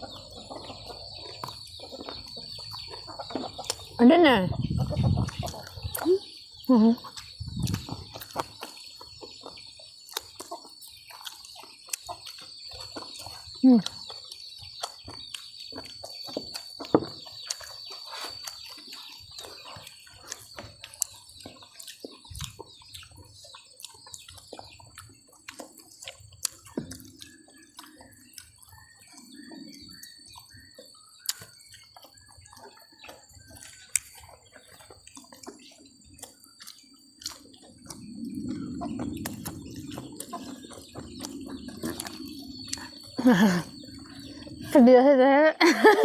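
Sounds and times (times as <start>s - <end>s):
wet chewing smacks: 10.1s - 44.2s.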